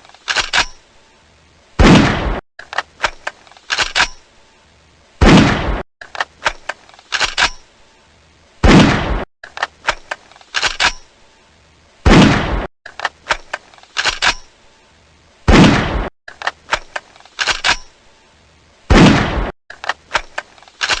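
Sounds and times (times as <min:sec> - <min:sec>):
gunshot: 0:01.8 - 0:02.4, 0:05.2 - 0:05.8, 0:08.6 - 0:09.3, 0:12.0 - 0:12.7, 0:15.5 - 0:16.1, 0:18.9 - 0:19.6.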